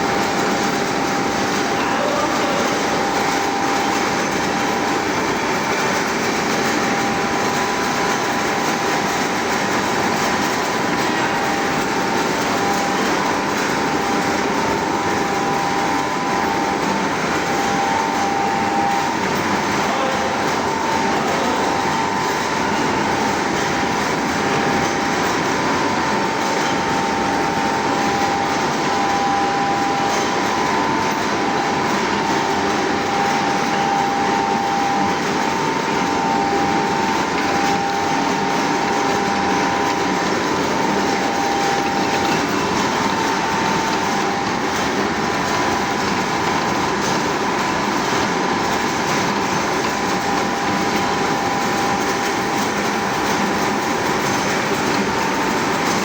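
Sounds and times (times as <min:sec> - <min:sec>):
lathe whine and rumble: 0:00.0 - 0:56.0.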